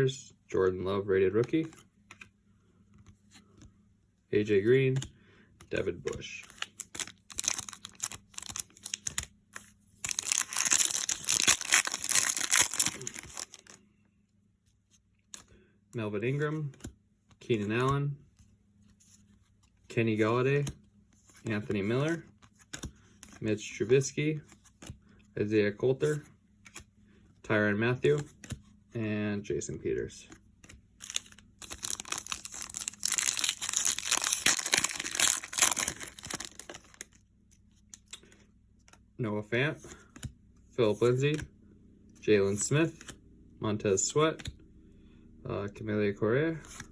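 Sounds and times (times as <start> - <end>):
card pack wrapper tearing: 6.5 - 9.3, 10.0 - 13.8, 31.0 - 37.2.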